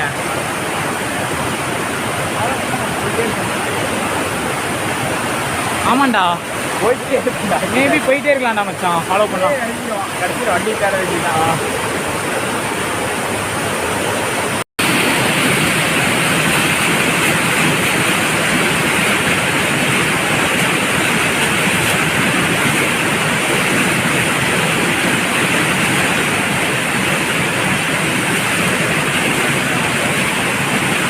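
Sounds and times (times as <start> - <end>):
waterfall rushing: 0.0 - 31.0.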